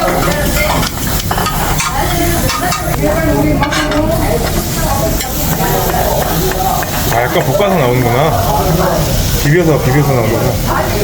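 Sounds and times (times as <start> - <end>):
spatula scraping a pan: 0.0 - 7.1
rice sizzling in a pan: 0.0 - 11.0.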